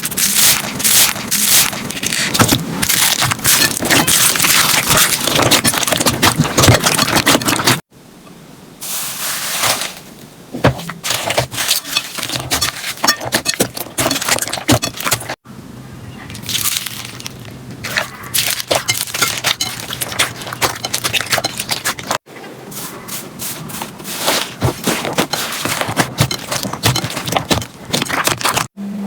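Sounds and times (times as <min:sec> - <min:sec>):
slime crackling and popping: 0:00.0 - 0:07.8, 0:16.4 - 0:22.0.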